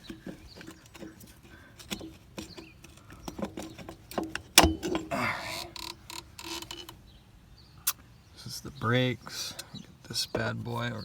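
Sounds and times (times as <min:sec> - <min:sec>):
clicks and knocks of tools: 0:00.0 - 0:07.0.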